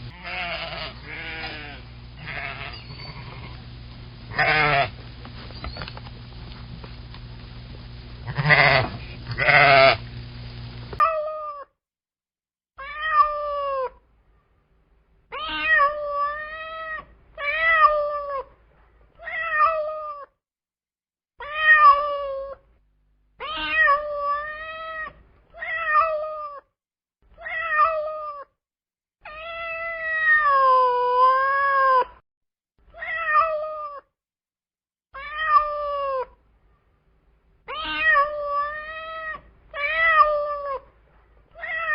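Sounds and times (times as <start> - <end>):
cat meowing: 0.1 - 3.6, 4.3 - 5.7, 12.8 - 14.0, 15.3 - 18.5, 19.2 - 20.3, 21.4 - 22.6, 23.4 - 26.6, 27.4 - 28.5, 29.2 - 32.1, 32.9 - 34.1, 35.2 - 36.4, 37.7 - 40.9, 41.5 - 41.9.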